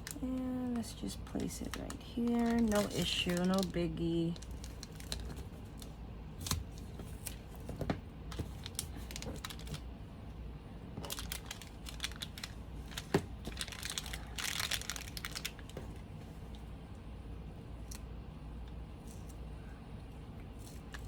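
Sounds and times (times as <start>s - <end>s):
paper and card rustling: 1.3s - 9.8s, 11.0s - 15.9s.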